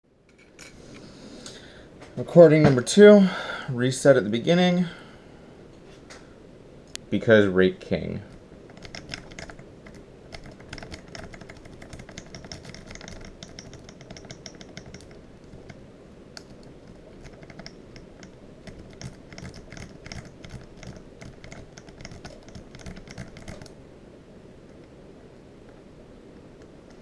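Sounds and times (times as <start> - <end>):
lock pick clicking in padlock: 8.7 - 15.8, 16.4 - 23.7.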